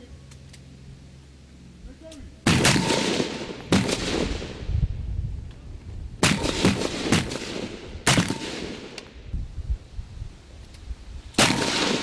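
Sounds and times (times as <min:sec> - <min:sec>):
rifle shots with echo: 0:02.5 - 0:04.7, 0:06.2 - 0:09.1, 0:11.4 - 0:12.0.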